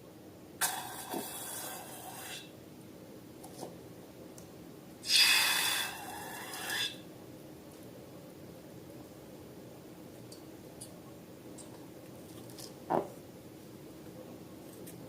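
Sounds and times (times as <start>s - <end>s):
air hissing out of balloon: 0.6s - 2.5s, 5.0s - 7.0s.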